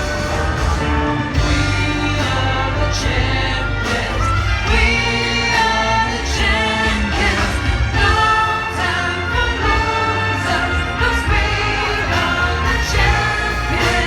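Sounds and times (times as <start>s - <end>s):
choir singing: 0.0s - 14.0s
heavy steady bass: 0.0s - 14.0s.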